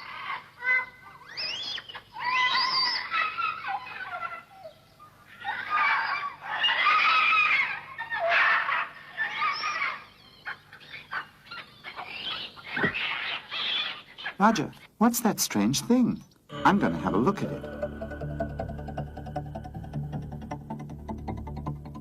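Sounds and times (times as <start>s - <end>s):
monkeys chattering and screeching: 0.0s - 15.0s.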